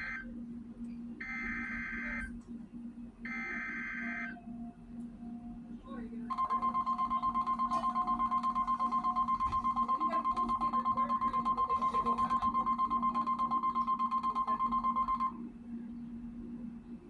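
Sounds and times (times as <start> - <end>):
low steady hum: 0.0 - 17.0
pulsing high alarm tone: 6.3 - 15.4.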